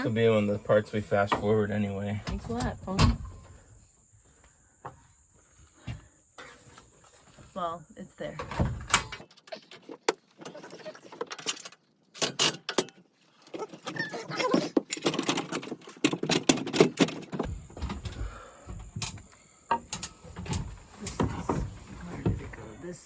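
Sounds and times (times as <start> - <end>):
objects rattling and clicking: 8.9 - 22.6.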